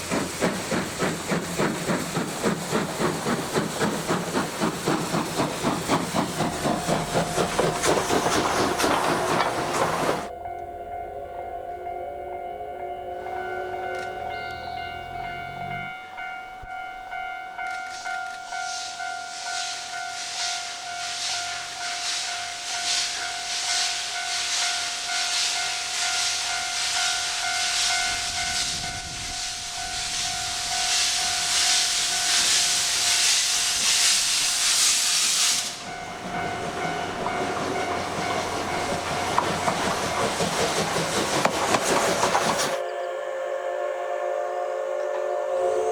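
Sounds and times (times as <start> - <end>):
hiss of steam: 0.0 - 10.3, 18.6 - 42.8
steam locomotive exhaust beats: 0.0 - 10.4, 13.6 - 42.9
train rumbling and clattering past: 0.0 - 43.1.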